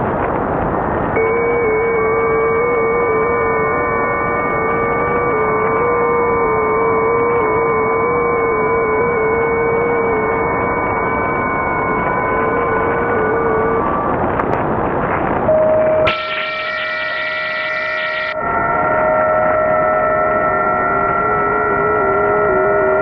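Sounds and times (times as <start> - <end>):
steady whistle-like tones: 1.2 - 14.2, 15.5 - 23.0.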